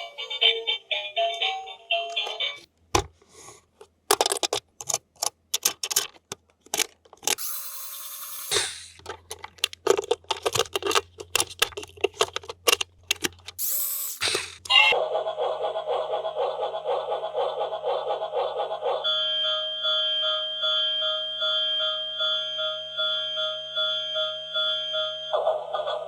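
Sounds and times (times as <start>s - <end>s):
plastic toy clicks and rattles: 4.1s - 7.5s, 8.5s - 14.8s.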